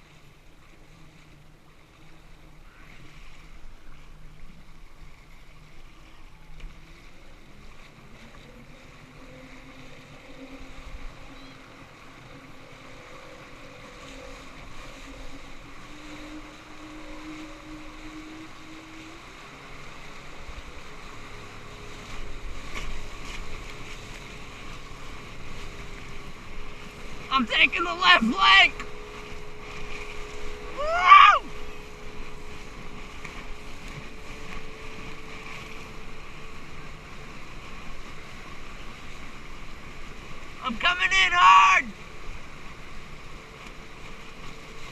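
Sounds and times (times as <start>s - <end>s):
motorboat engine speeding up: 0.0s - 44.9s
rushing water: 0.0s - 44.9s
wind: 0.0s - 44.9s.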